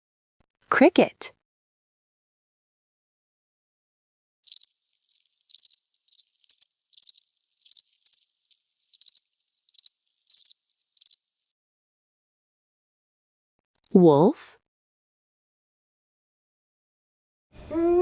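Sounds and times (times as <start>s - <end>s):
cricket chirping: 4.5s - 11.4s.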